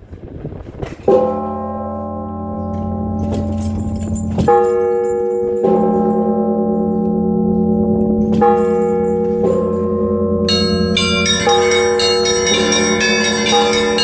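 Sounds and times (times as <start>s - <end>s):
bells ringing: 8.5s - 14.0s
small high bells ringing: 10.5s - 14.0s.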